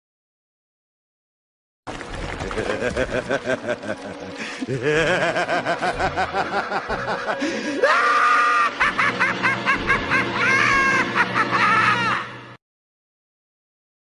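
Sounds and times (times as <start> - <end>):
rhythmic laugh: 2.3 - 12.6
high squeaky laugh: 4.7 - 12.4.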